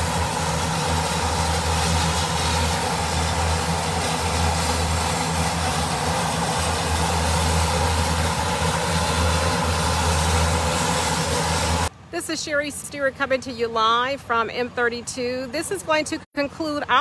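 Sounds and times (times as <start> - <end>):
jet engines running: 0.0 - 12.0.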